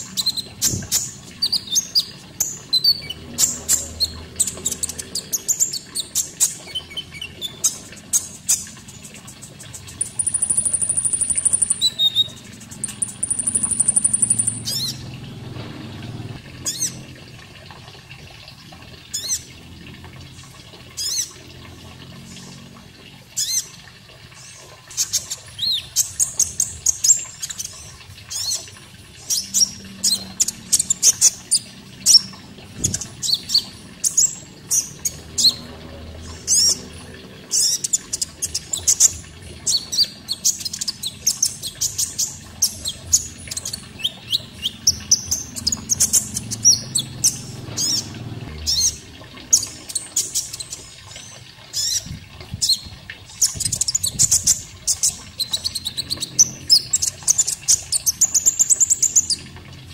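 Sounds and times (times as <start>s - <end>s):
faint running water: 0.0s - 59.9s
songbird trilling and chirping: 10.0s - 15.0s.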